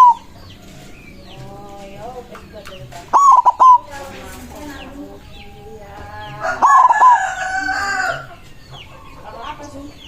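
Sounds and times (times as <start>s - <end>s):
dove cooing: 0.0s - 9.7s
small birds chirping: 0.0s - 10.0s
rooster crowing: 5.8s - 8.4s.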